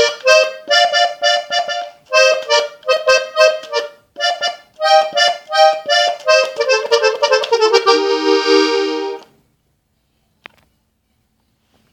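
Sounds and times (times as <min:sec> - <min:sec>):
button accordion melody: 0:00.0 - 0:09.3.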